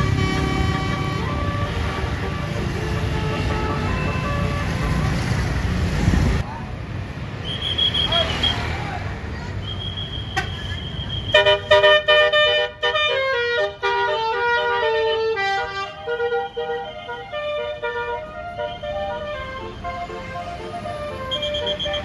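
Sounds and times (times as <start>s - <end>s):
steady high tone: 0.0s - 5.2s
multi-trumpet air horn melody: 0.0s - 5.4s, 11.3s - 22.0s.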